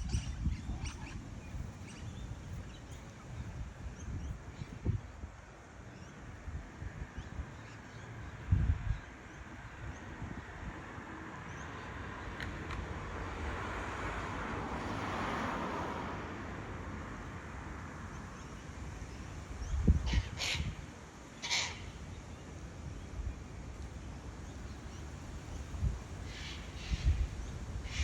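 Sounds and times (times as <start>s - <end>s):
steady background hiss: 16.9s - 28.0s
cockatoos screeching: 20.1s - 20.7s, 21.4s - 21.9s.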